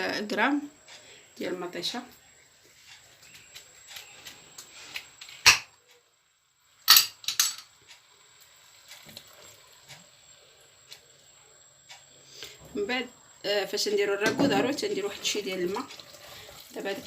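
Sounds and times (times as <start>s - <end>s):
cookware clattering: 6.9s - 7.7s.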